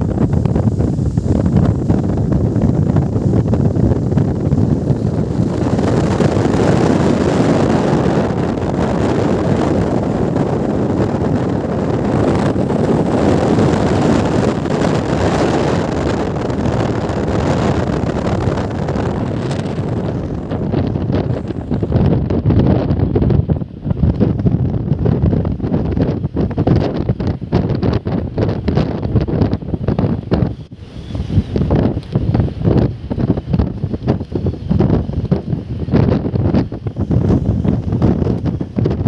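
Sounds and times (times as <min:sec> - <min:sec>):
wind buffeting microphone: 0:00.0 - 0:39.0.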